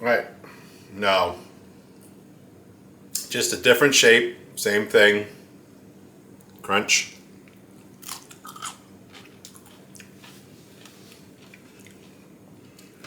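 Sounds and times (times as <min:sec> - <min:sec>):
person chewing crunchy pickle: 0:07.5 - 0:13.0.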